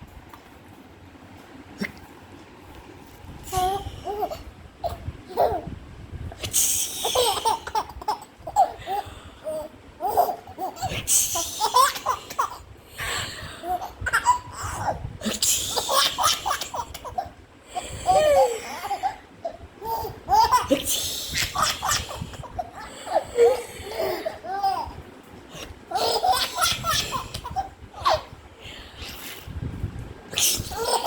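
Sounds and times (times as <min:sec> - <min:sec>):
baby laughing: 0:03.5 - 0:05.8, 0:06.8 - 0:12.7, 0:13.5 - 0:17.4, 0:18.0 - 0:28.4, 0:30.4 - 0:31.0.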